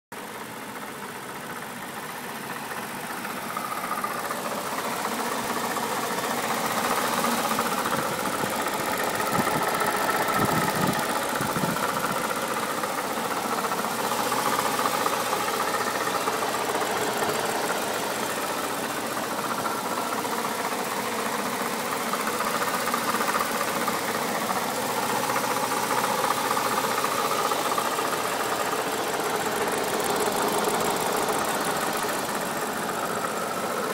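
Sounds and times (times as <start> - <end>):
car engine idling: 0.1 - 33.9.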